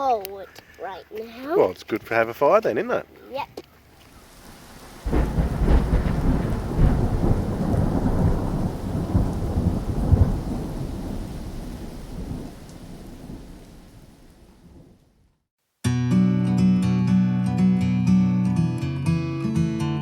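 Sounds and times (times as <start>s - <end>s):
steady rain: 3.3s - 15.2s
rolling thunder: 4.3s - 15.0s.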